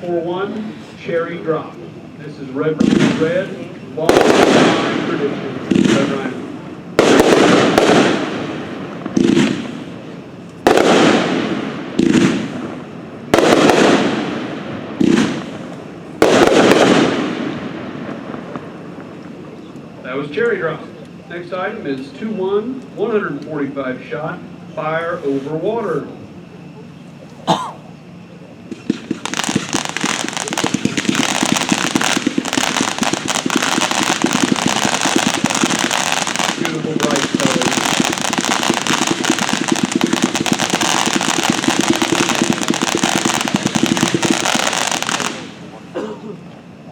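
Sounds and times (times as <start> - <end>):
firework bangs: 2.3 - 19.6, 28.6 - 46.2
fireworks launch thumps: 28.7 - 45.4.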